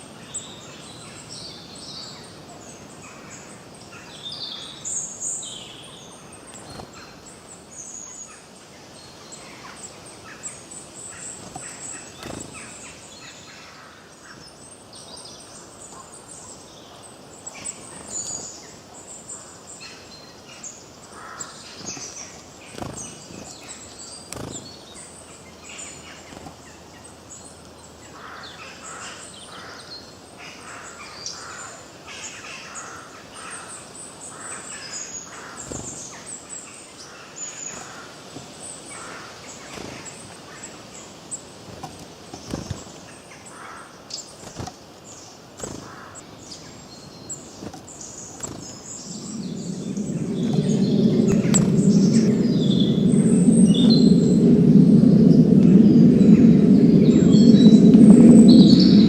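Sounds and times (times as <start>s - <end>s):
birds singing and chirping: 45.6s - 59.0s.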